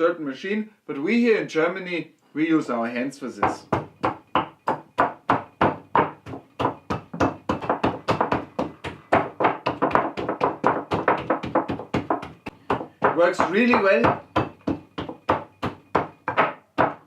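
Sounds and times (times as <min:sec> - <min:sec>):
hands pounding potatoes: 0:03.4 - 0:17.0.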